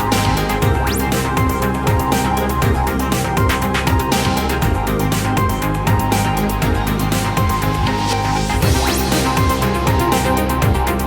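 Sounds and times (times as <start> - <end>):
electronic music with fast beat: 0.0 - 11.0
pulsing bass line: 0.0 - 11.0.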